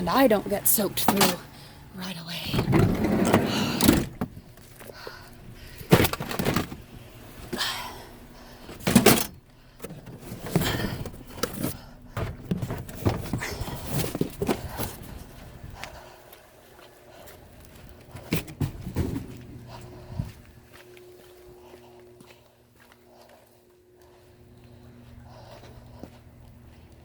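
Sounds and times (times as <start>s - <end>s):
objects knocking and clunking: 5.8s - 7.6s, 8.7s - 15.0s, 18.1s - 19.5s.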